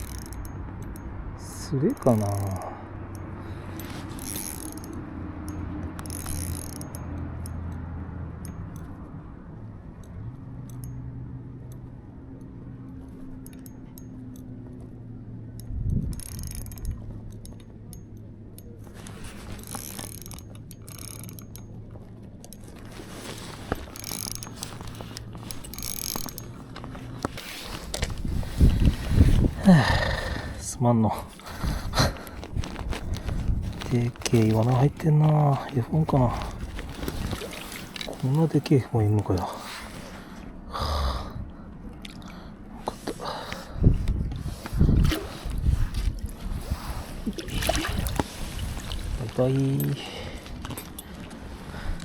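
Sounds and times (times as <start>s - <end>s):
fishing reel gear whir: 0.0s - 9.0s, 11.6s - 30.6s, 31.4s - 40.1s
reel drag clicking: 0.0s - 9.1s, 12.5s - 29.5s, 31.4s - 40.4s.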